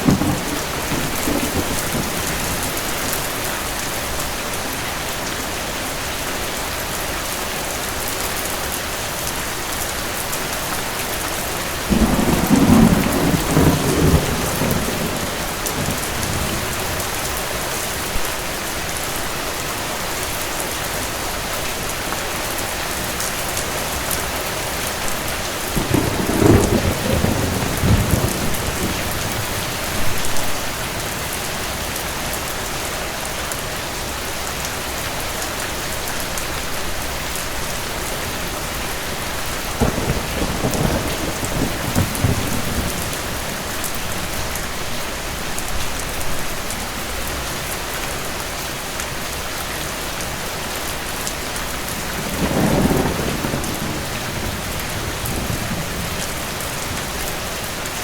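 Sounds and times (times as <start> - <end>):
thunder rumbling: 0.0 - 4.1, 11.8 - 18.3, 24.8 - 31.3, 38.6 - 45.4, 51.6 - 57.8
steady rain: 0.0 - 58.0.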